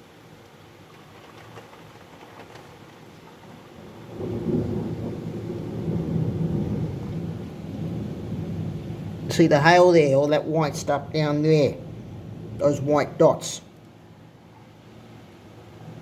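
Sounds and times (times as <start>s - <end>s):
light ticks of hail: 0.0s - 10.0s, 11.7s - 14.7s
hail and rain pattering: 0.0s - 14.0s
thunder rumbling: 3.4s - 14.1s.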